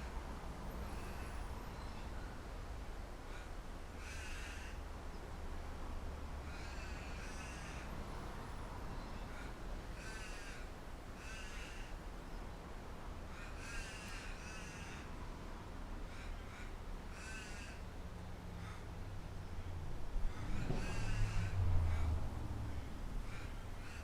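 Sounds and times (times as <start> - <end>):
low rumble of wind: 0.0 - 24.0
bird harsh calls: 13.4 - 15.0.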